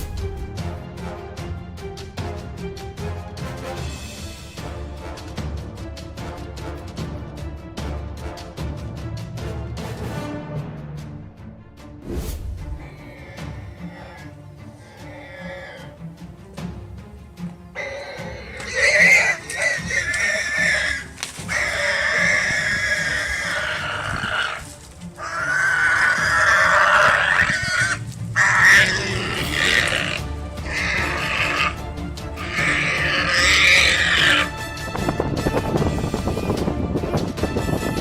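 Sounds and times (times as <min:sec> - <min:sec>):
background music: 0:00.0 - 0:38.0
animal calling loudly: 0:12.8 - 0:16.0, 0:17.8 - 0:31.8, 0:32.4 - 0:34.5.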